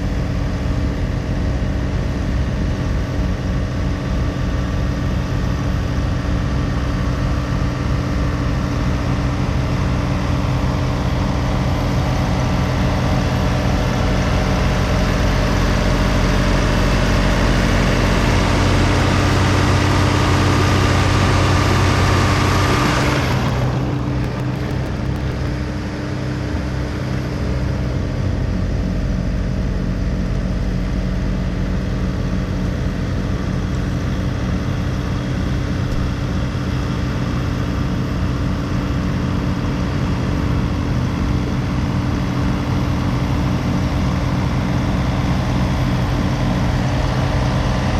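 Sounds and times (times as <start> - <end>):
snow blower rushing: 22.1 - 25.6
tractor diesel engine running: 22.1 - 25.6.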